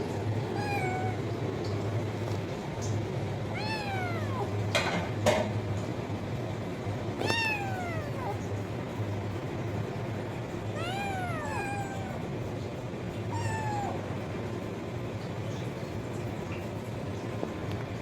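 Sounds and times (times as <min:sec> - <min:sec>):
steady low hum: 0:00.0 - 0:18.0
cat meowing: 0:00.4 - 0:01.4, 0:03.5 - 0:04.6, 0:07.2 - 0:08.5, 0:10.7 - 0:12.3, 0:13.2 - 0:14.2.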